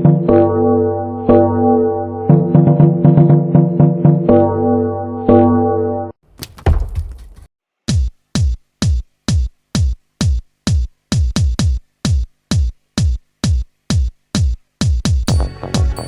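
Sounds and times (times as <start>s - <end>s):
deep kick drum beating: 7.9s - 16.0s.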